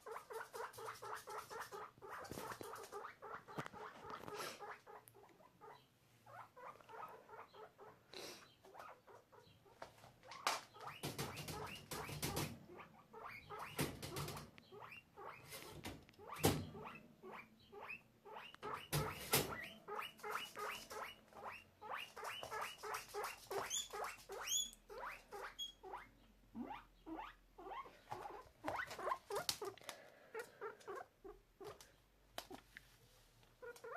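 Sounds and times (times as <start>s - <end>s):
guinea pig squeaking: 0.0s - 8.0s, 8.6s - 31.8s, 33.6s - 33.9s.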